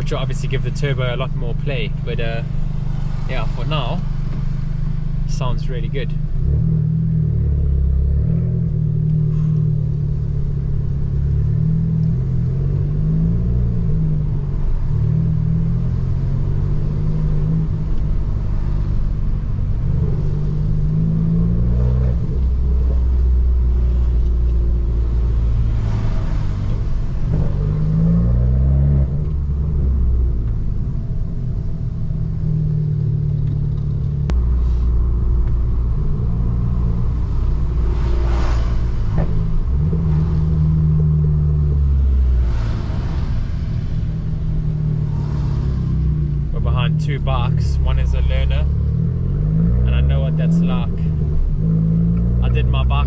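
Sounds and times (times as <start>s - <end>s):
car engine revving while driving: 0.0s - 53.0s.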